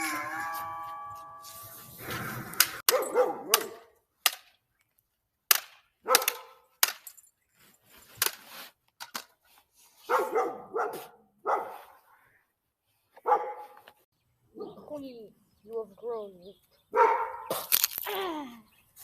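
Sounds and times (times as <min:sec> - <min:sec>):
dog barking: 0:02.9 - 0:03.9, 0:06.0 - 0:06.6, 0:10.1 - 0:11.9, 0:13.2 - 0:13.8, 0:14.5 - 0:14.8, 0:16.9 - 0:17.5.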